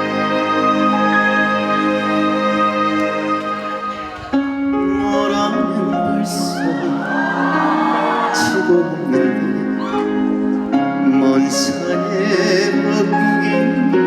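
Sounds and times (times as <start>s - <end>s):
slow ballad over sound system: 0.0s - 14.0s
audience calling out: 6.4s - 9.0s.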